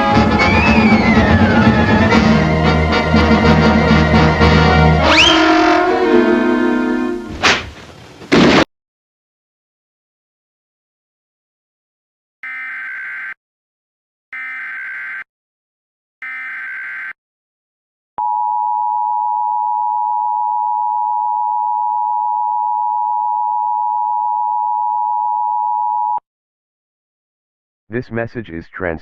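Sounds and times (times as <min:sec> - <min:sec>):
steady dual tone signal: 0:18.2 - 0:26.2.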